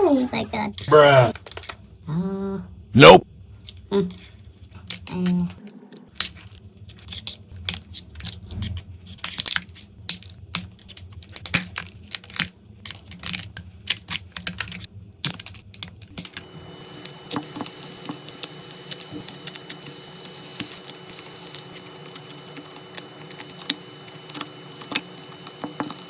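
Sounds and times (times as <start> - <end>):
glass clicking and crackling: 9.3 - 26.0
faint steady hum: 14.4 - 26.0.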